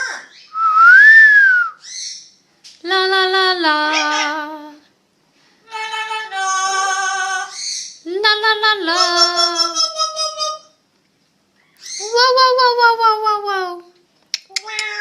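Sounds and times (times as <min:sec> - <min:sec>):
parrot singing: 0:03.8 - 0:04.6, 0:05.6 - 0:08.1, 0:08.9 - 0:10.8, 0:11.6 - 0:13.6.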